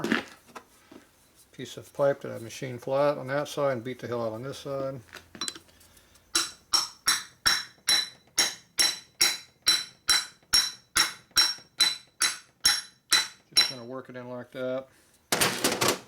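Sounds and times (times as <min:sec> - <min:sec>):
hammer tapping metal pipe: 0:06.4 - 0:13.9.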